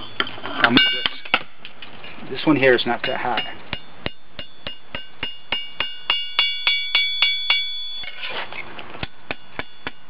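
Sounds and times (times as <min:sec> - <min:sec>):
hammer striking anvil: 0:00.0 - 0:01.5, 0:02.6 - 0:08.1, 0:09.0 - 0:10.0.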